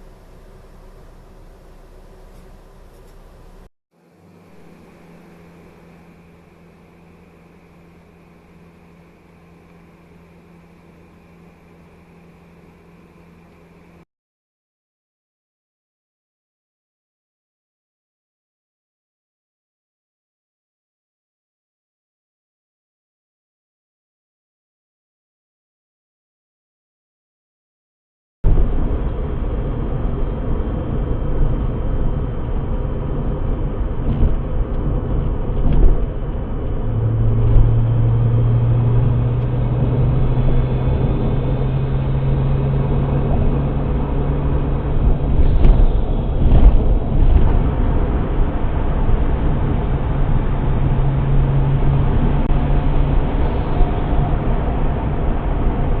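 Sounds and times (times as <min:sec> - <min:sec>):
low droning hum: 0:00.0 - 0:14.0, 0:28.5 - 0:56.0
car engine and road rumble: 0:00.0 - 0:14.1, 0:28.5 - 0:56.0.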